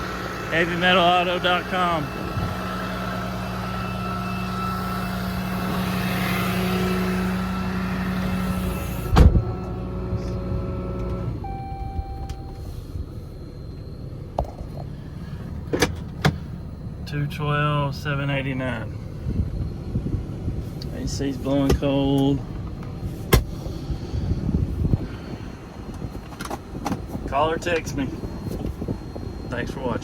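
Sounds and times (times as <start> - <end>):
diesel engine idling: 0.0 - 30.0
loud thump: 9.0 - 9.5.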